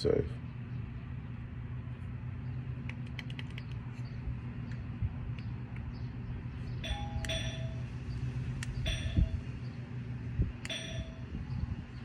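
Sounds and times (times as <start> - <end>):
steady low hum: 0.0 - 12.0
two-note doorbell chime: 6.8 - 7.9, 8.9 - 9.4, 10.7 - 11.4.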